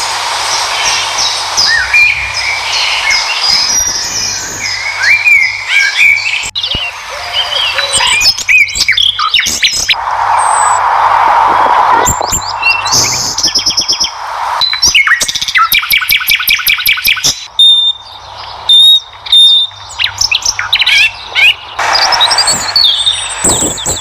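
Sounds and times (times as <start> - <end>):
steady background hiss: 0.0 - 8.8
wild birds chirping: 0.0 - 24.0.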